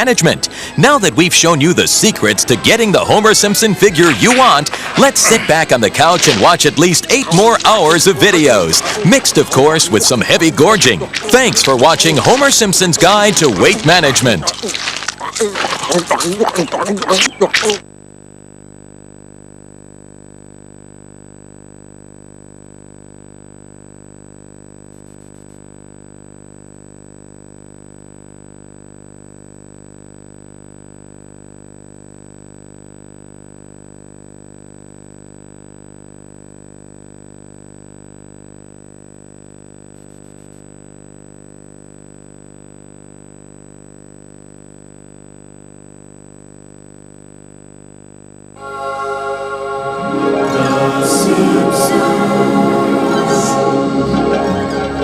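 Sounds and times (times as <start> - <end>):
electrical hum and buzz: 0.0 - 55.0
high-pitched whine: 48.5 - 55.0.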